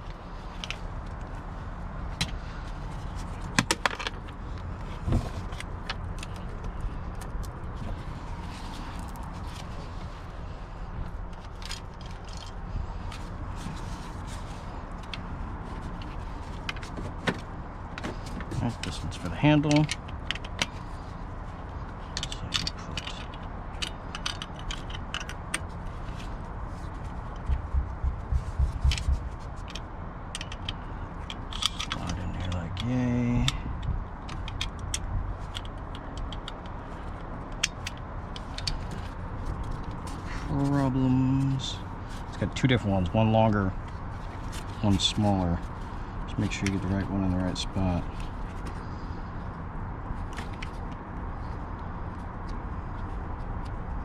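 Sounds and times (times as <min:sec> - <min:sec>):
steady low rumble: 0:00.0 - 0:54.0
dull low bumps: 0:27.0 - 0:29.6.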